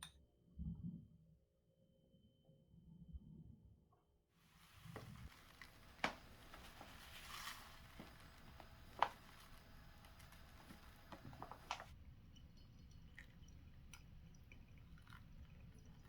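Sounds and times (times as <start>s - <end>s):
soft rustle or scrape: 4.5s - 11.9s.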